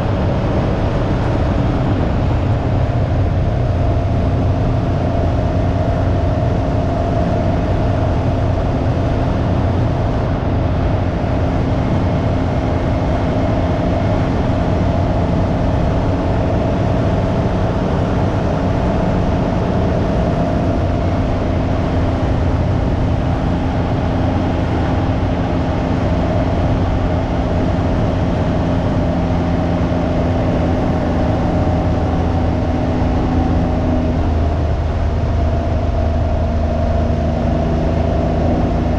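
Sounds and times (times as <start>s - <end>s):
wind rumble on microphone: 0.0s - 38.9s.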